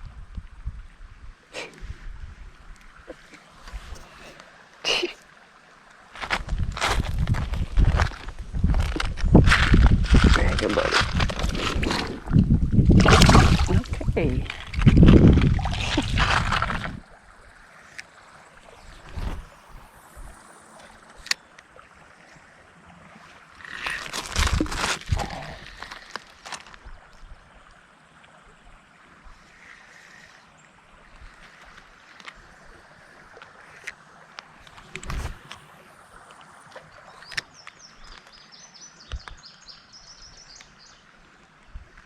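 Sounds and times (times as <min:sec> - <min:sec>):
outdoor background noise: 0:00.0 - 0:42.0
creek water splashing: 0:01.4 - 0:42.0
songbird singing: 0:35.7 - 0:41.2.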